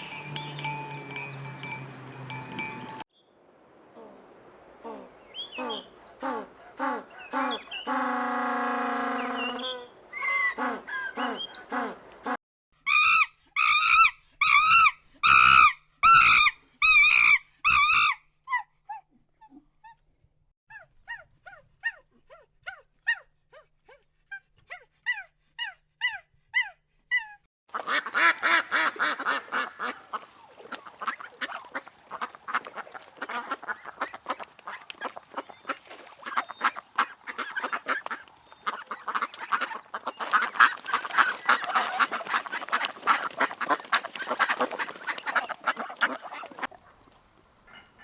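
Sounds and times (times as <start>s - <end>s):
loud animal calls: 4.8s - 12.4s
low animal calls: 4.8s - 12.4s
high chirps: 9.0s - 11.9s.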